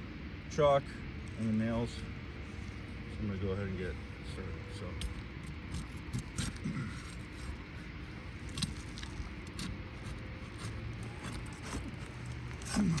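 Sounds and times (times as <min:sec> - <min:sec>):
low background rumble: 0:00.0 - 0:13.0
metallic clinks of tools and nails: 0:08.5 - 0:13.0.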